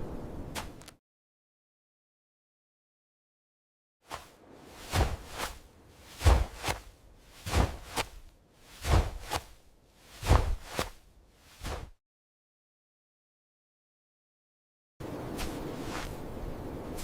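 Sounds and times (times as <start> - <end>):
footsteps on sand: 4.1 - 12.0.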